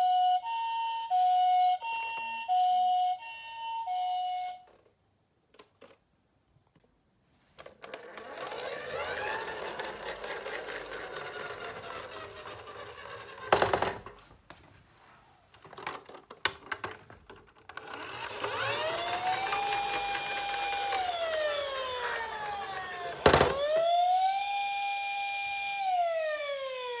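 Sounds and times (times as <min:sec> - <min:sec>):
toy ambulance siren wailing: 0:00.0 - 0:04.7, 0:08.3 - 0:13.8, 0:17.8 - 0:27.0.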